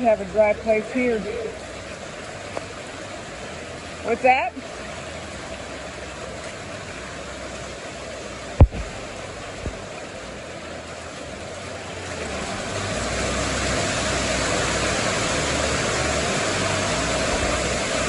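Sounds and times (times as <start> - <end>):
rain hiss: 0.0 - 18.0
running floodwater: 0.0 - 18.0
low thump: 8.6 - 9.0.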